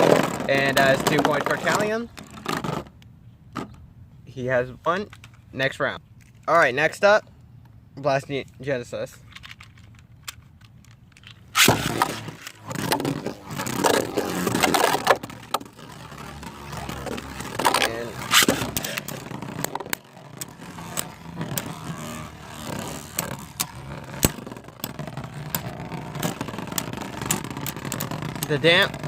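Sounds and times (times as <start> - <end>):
spinning tops clashing in plastic stadium: 9.2 - 29.0
spinning top launch: 11.5 - 29.0.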